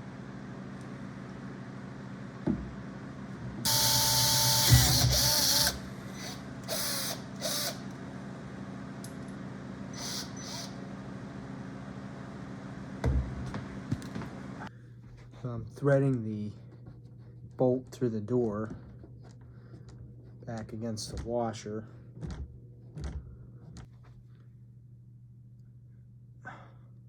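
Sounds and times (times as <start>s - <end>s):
cordless drill whining: 3.7s - 8.0s, 9.9s - 10.8s
drill trigger bursts: 3.7s - 8.0s, 9.9s - 10.8s.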